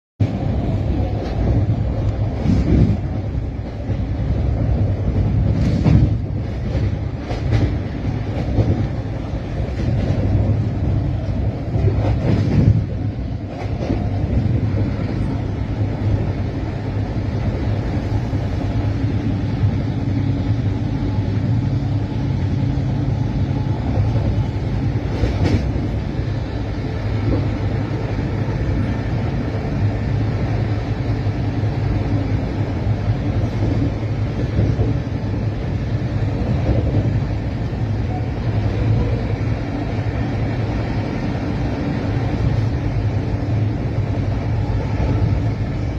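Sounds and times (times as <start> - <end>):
railway coach low rumble: 0.2 - 45.9.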